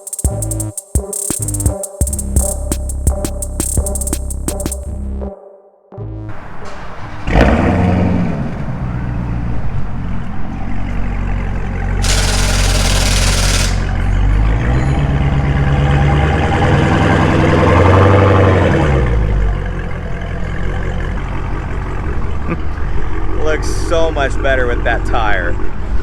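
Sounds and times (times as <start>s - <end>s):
compressed air hiss: 12.0s - 13.9s
machine motor winding up: 12.0s - 14.1s.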